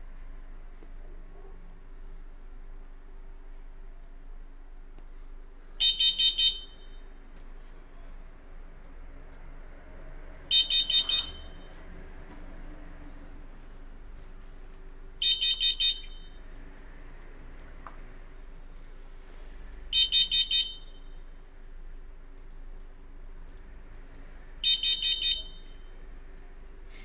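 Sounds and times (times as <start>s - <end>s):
alarm high-pitched beeps: 5.8s - 7.0s, 10.5s - 11.7s, 15.2s - 16.4s, 19.9s - 21.1s, 24.6s - 25.8s.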